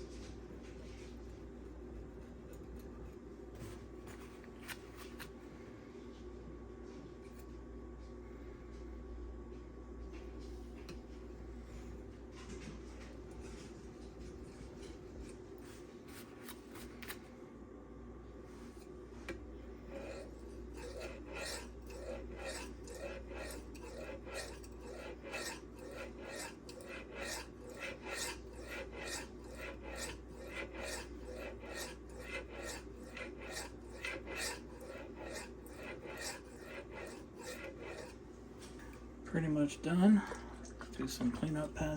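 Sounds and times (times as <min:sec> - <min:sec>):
knife scraping on sharpening stone: 0:19.9 - 0:38.2.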